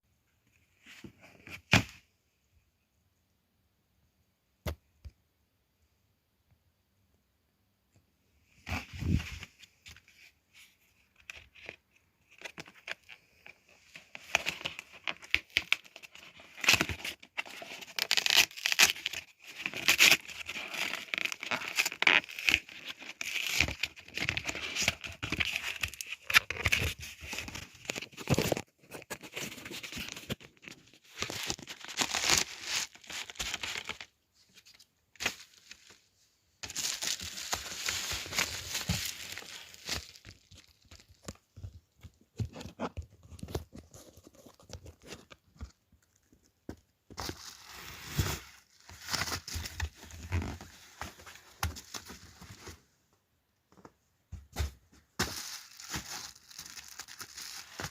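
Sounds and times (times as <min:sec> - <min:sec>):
packaging tearing and crinkling: 0:14.3 - 0:28.6, 0:31.2 - 0:34.0, 0:55.2 - 0:57.9.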